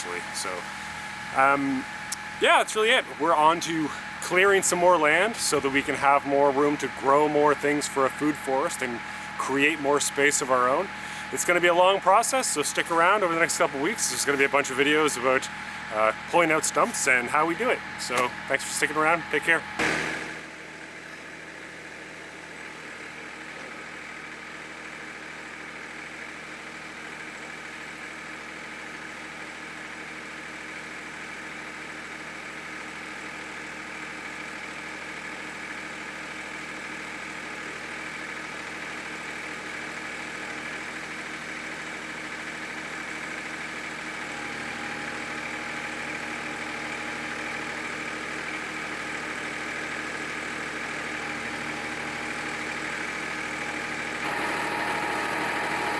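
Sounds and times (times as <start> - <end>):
tractor diesel engine idling: 0.0 - 19.8, 44.2 - 55.9.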